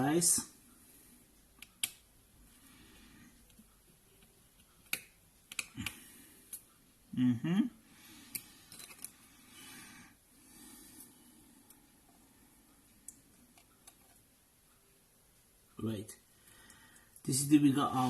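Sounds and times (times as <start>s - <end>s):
person humming: 7.1s - 7.8s.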